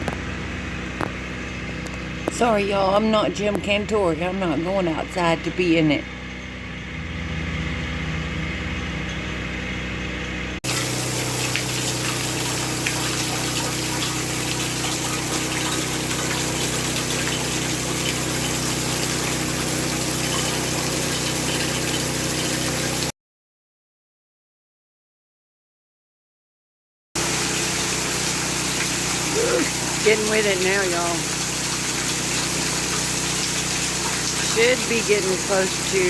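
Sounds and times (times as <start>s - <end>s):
steady low hum: 0.0s - 23.1s
driving rain: 28.8s - 31.2s.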